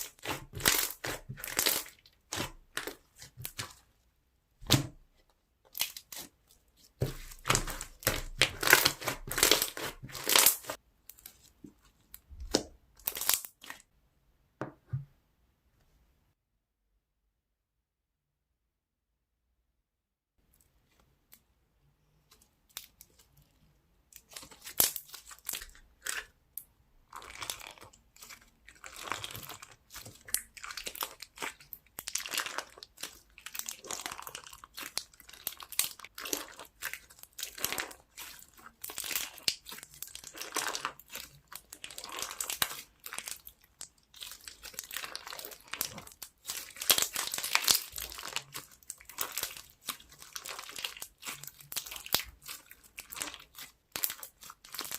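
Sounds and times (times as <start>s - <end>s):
slime squishing and popping: 0.0s - 3.9s, 7.0s - 10.8s, 27.1s - 54.9s.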